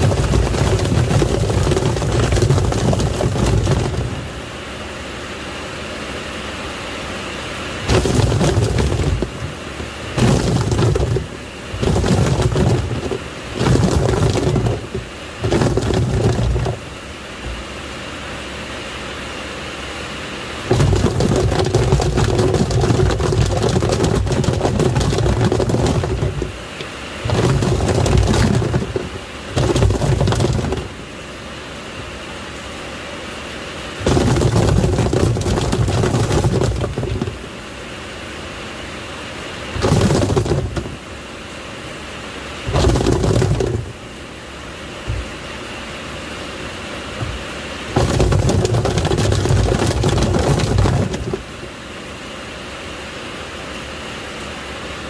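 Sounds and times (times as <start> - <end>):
water sloshing: 0.0 - 4.6, 7.8 - 17.7, 20.6 - 31.1, 34.0 - 37.6, 39.7 - 41.2, 42.6 - 44.1, 47.1 - 51.6
washing machine motor churning: 0.0 - 32.4, 33.7 - 37.9, 39.2 - 51.8
toys clattering against tub: 7.9 - 16.8, 20.7 - 26.6, 27.3 - 31.0, 34.0 - 37.4, 39.8 - 41.0, 42.7 - 43.9, 48.0 - 51.4.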